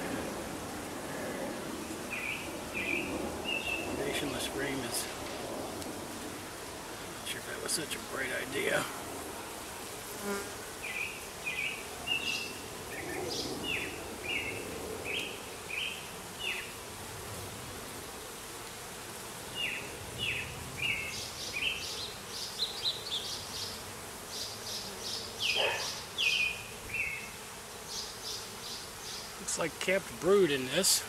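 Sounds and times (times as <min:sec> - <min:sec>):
honeybees buzzing: 0:00.0 - 0:31.0
bird chirping: 0:19.6 - 0:27.2.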